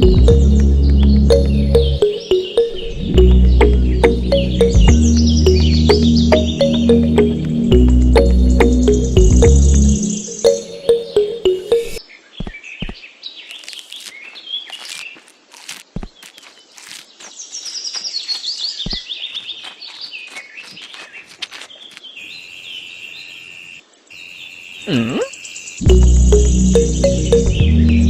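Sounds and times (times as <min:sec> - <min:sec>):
birds chirping and calling: 0:00.0 - 0:15.2.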